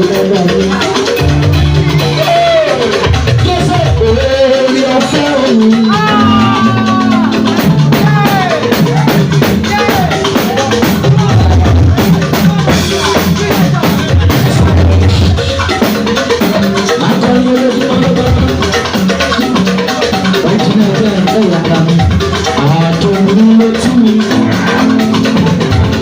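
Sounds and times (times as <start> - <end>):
heavy bass line: 0.0 - 19.7
drum-kit beat: 0.0 - 26.0
person singing: 0.0 - 26.0.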